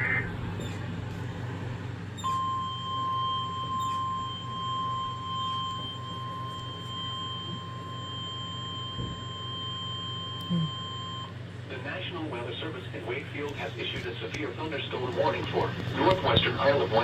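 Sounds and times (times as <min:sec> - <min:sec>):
low radio hum: 0:00.0 - 0:02.0, 0:11.6 - 0:17.0.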